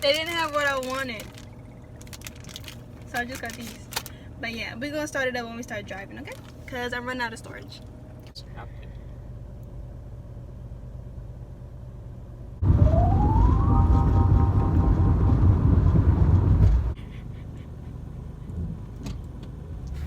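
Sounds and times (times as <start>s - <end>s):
car engine and road rumble: 0.0s - 4.2s, 5.9s - 20.0s
engine whine rising in pitch: 12.6s - 17.0s.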